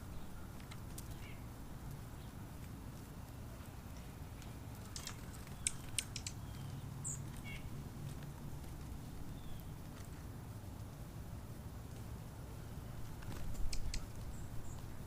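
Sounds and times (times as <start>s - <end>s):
sharp clicks: 4.9s - 6.4s, 13.3s - 14.1s
high bird chirp: 5.0s - 7.7s.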